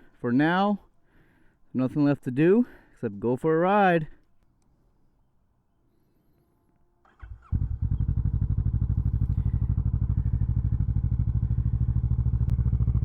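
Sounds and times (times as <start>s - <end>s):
motorcycle engine idling: 7.2s - 13.0s.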